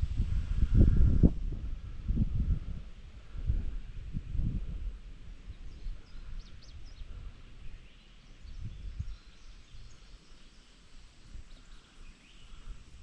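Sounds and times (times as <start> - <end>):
wind noise on microphone: 0.0 - 10.4, 11.0 - 13.0
faint bird chirps: 5.5 - 13.0.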